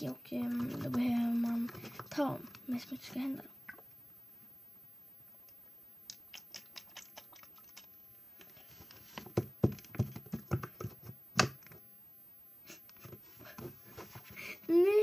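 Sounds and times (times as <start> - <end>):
slime squelching: 6.1 - 8.0.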